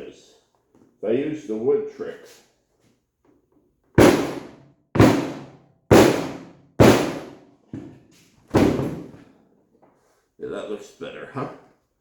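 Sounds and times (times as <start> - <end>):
hammer blows on wood and metal: 4.0 - 7.4.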